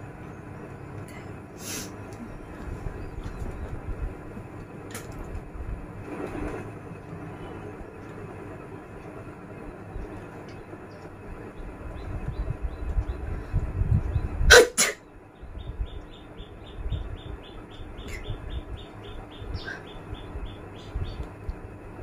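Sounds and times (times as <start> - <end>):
low rumbling noise: 0.0 - 22.0
person sneezing: 14.5 - 15.0.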